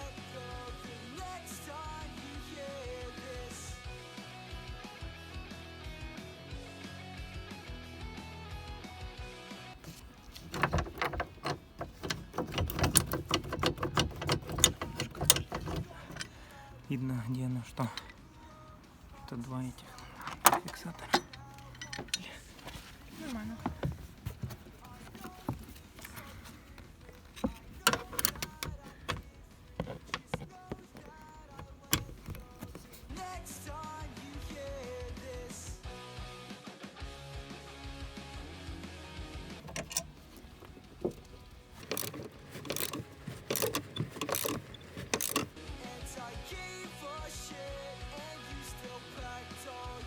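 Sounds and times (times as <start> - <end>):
plastic parts clicking and knocking: 9.8 - 17.1, 17.7 - 33.1, 39.6 - 45.6.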